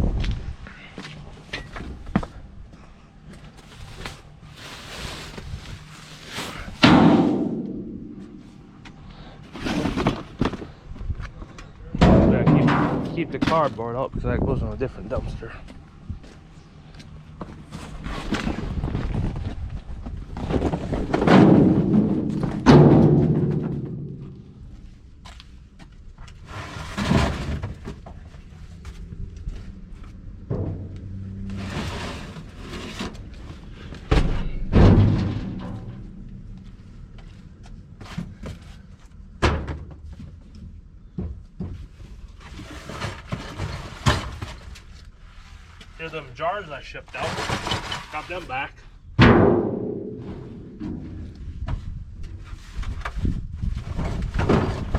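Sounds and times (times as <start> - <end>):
junk thudding into metal dumpster: 6.5 - 8.6, 11.9 - 13.7, 20.4 - 24.5, 30.4 - 33.3, 33.9 - 36.5, 39.4 - 40.2, 49.2 - 51.3, 54.0 - 54.9.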